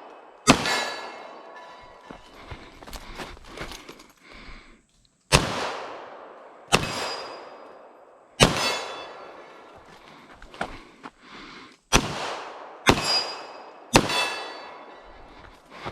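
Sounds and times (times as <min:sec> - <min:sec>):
pistol shots with echo: 0:00.1 - 0:01.6, 0:05.3 - 0:09.5, 0:11.9 - 0:14.9.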